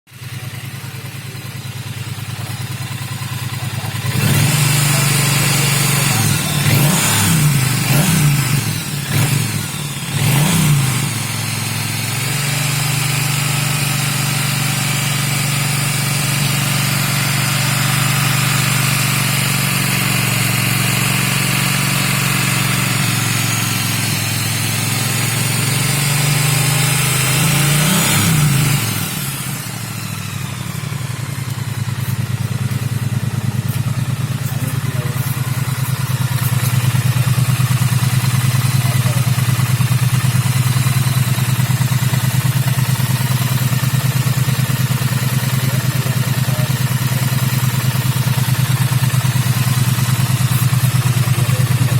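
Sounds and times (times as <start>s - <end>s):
motorcycle engine idling and revving: 0.0s - 51.9s.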